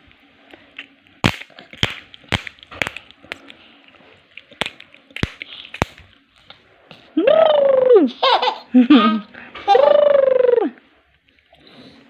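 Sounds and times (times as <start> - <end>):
gum chewing with snaps: 0.5 - 6.6.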